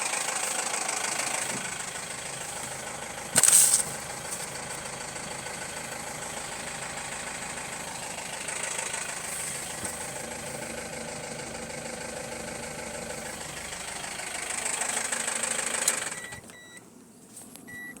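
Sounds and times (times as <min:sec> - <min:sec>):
engine running with piston knock: 0:00.0 - 0:16.4
short electronic beeps: 0:16.2 - 0:16.8, 0:17.7 - 0:18.0.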